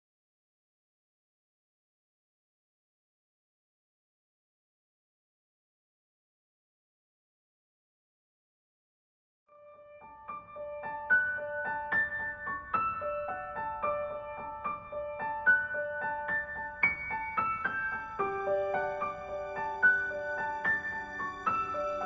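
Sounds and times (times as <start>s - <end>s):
gentle piano melody: 9.6s - 22.0s.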